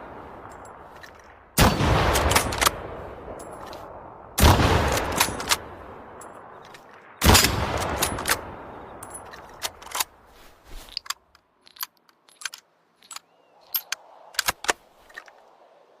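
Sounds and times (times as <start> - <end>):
rifle shot with echo: 1.6 - 9.0
sharp metallic clicks: 10.9 - 15.4.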